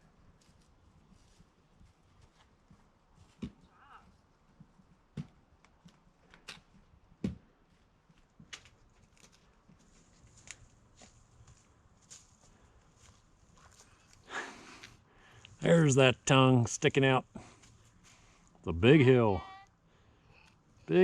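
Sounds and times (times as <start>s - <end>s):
footsteps on a trail: 7.7s - 15.6s.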